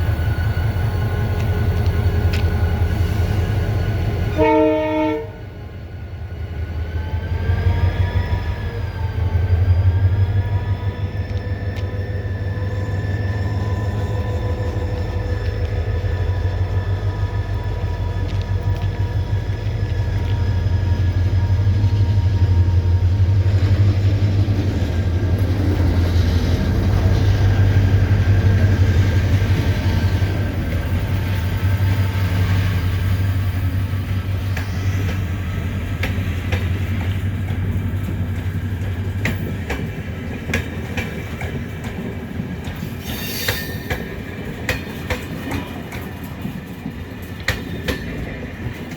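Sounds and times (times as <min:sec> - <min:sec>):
diesel locomotive engine humming: 0:00.0 - 0:48.9
train wheels clacking over rail joints: 0:23.6 - 0:48.9.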